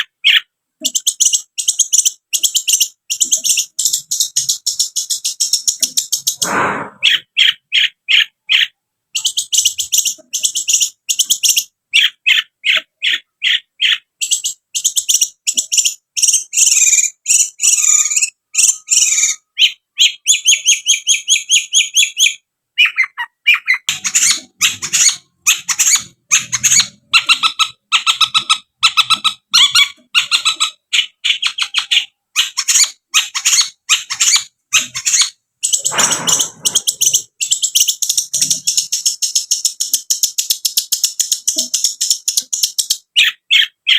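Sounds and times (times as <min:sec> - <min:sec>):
bird singing sharp high notes: 0:35.6 - 0:37.3.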